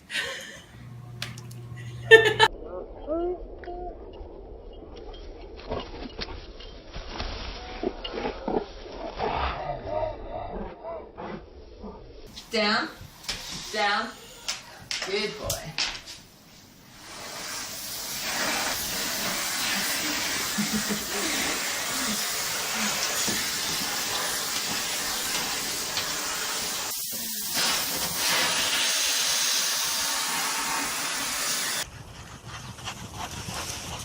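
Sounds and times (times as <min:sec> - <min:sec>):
loud hissing rush: 0:16.6 - 0:31.8.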